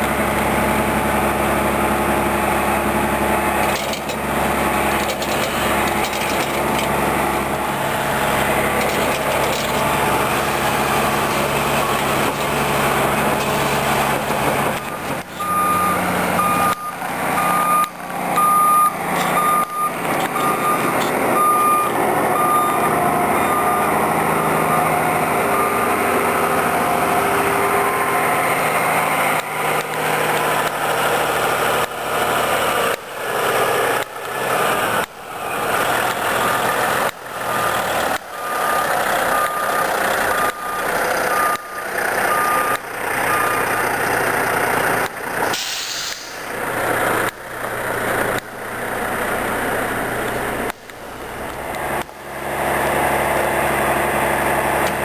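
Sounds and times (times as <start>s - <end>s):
heavy truck engine running: 0.0s - 55.0s
reversing alarm beeping: 14.7s - 26.1s, 37.4s - 43.9s.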